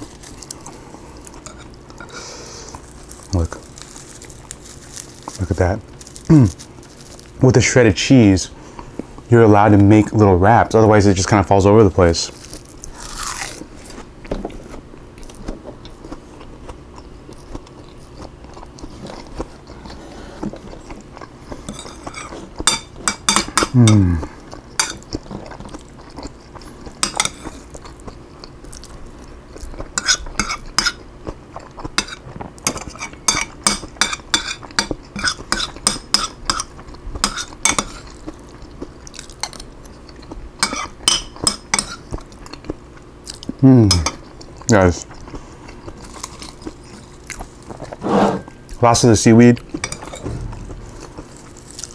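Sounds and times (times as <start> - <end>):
chewing: 0.0 - 7.4, 12.3 - 22.7, 23.4 - 33.6, 34.5 - 48.8, 49.6 - 51.9
utensils scraping a dish: 47.8 - 48.8.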